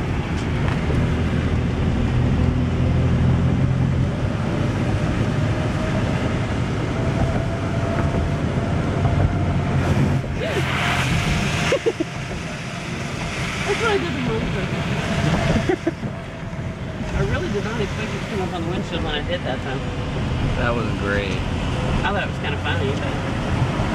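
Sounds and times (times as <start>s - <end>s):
car engine and tyre noise: 0.0s - 23.9s
water spray hissing on car: 9.8s - 16.1s.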